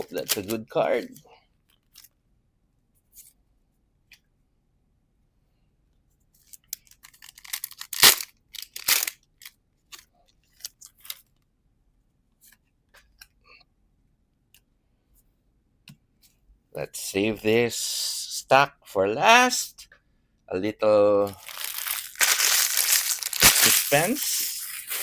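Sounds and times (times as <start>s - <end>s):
foil wrapper crinkling and tearing: 7.1s - 9.2s, 21.3s - 25.0s
cards clicking: 7.3s - 9.1s, 21.3s - 25.0s.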